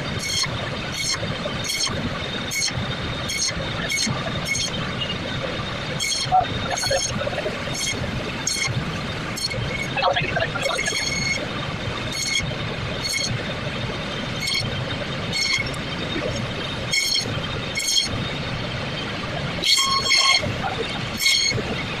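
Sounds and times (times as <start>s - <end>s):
background traffic hum: 0.0s - 22.0s
vehicle horns honking: 3.3s - 5.2s, 6.0s - 8.8s, 9.4s - 11.4s, 12.1s - 13.3s, 14.4s - 15.8s, 16.8s - 18.2s, 19.6s - 21.7s.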